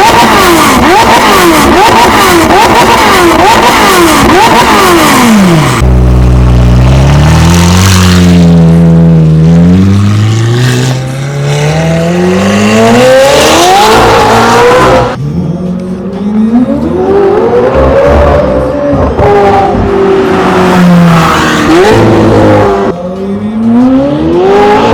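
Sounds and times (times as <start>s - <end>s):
car engine revving under acceleration: 0.0s - 24.9s.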